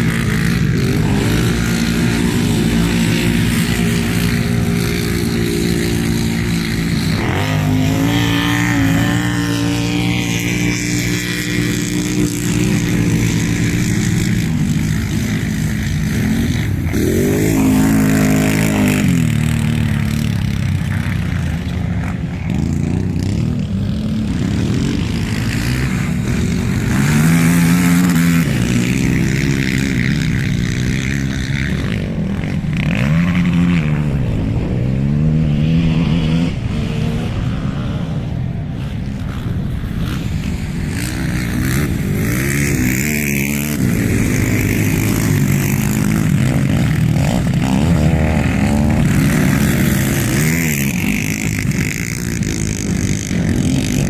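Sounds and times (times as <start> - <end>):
quad bike engines revving: 0.0 - 54.0.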